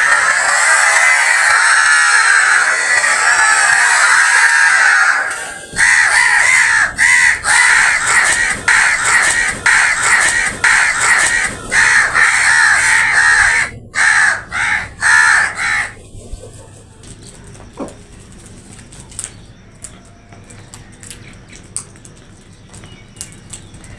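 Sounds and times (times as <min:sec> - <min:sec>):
crows cawing harshly: 0:00.0 - 0:16.0.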